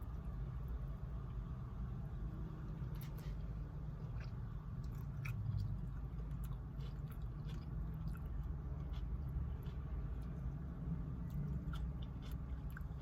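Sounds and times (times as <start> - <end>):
person chewing food: 2.8 - 13.0.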